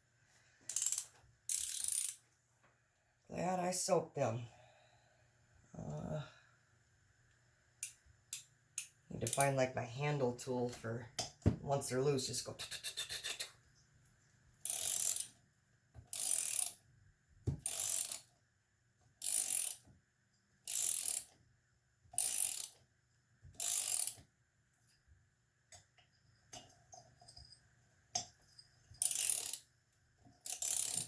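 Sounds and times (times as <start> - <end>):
ratchet handle clicking: 0.7 - 2.2, 14.6 - 15.3, 16.1 - 16.8, 17.6 - 18.2, 19.2 - 19.8, 20.7 - 21.3, 22.2 - 22.8, 23.6 - 24.2, 29.0 - 29.6, 30.4 - 31.0.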